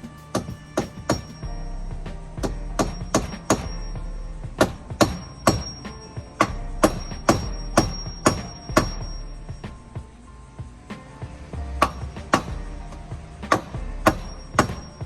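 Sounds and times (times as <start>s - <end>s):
music: 0.0s - 15.0s
hammer striking: 0.3s - 1.5s, 2.4s - 4.0s, 4.6s - 10.0s, 11.8s - 15.0s.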